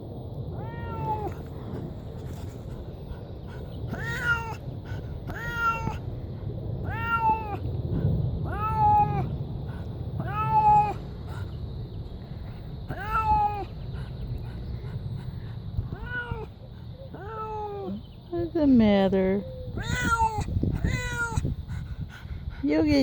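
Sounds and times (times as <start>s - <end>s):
cat meowing loudly: 0.5s - 1.5s, 3.9s - 4.6s, 5.3s - 6.0s, 6.8s - 7.6s, 8.4s - 9.3s, 10.2s - 11.0s, 12.9s - 13.7s, 15.9s - 16.5s, 17.1s - 18.0s, 19.7s - 21.4s.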